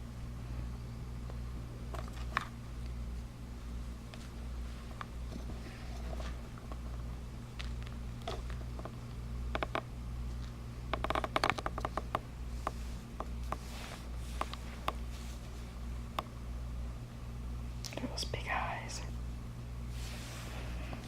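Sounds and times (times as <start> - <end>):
low electrical hum: 0.0 - 21.0
light clicks and scratches: 9.6 - 15.6.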